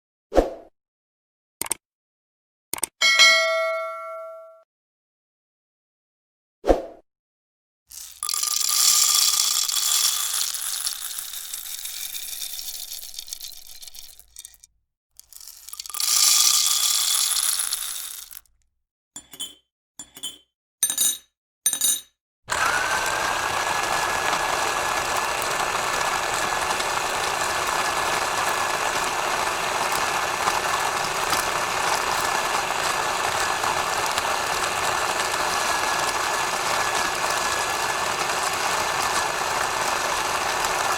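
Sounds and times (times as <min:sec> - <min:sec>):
coffee machine hissing: 0:07.9 - 0:14.3, 0:15.2 - 0:18.5, 0:22.5 - 0:40.9.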